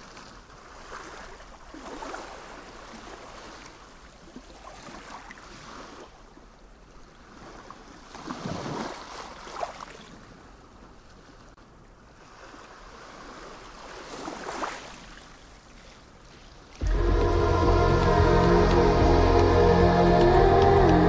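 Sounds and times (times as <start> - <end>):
sea waves washing in: 16.8 - 21.0.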